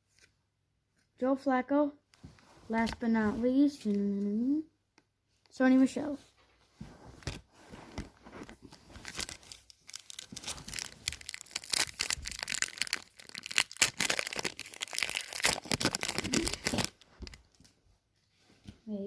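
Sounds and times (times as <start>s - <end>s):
foil wrapper tearing and crinkling: 8.9s - 17.4s.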